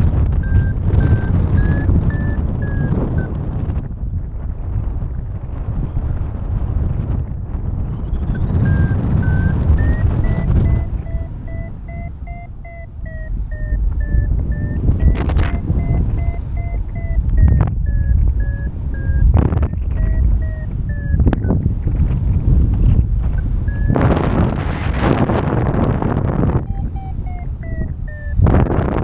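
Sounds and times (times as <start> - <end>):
variometer beeping: 0.0 - 3.7, 8.2 - 24.6, 26.6 - 28.7
wind rush on microphone: 0.0 - 29.0.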